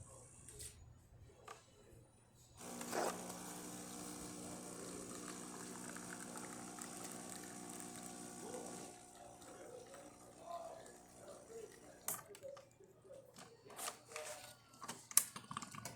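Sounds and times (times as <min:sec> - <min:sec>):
espresso machine rush: 0:02.6 - 0:12.0
espresso machine humming: 0:02.6 - 0:12.1.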